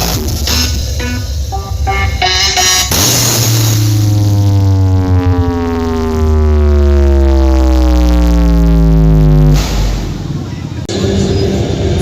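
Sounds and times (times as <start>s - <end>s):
loud electronic music: 0.0s - 10.2s
deep heavy bass: 0.0s - 11.2s
synth tone gliding downward: 1.4s - 9.8s.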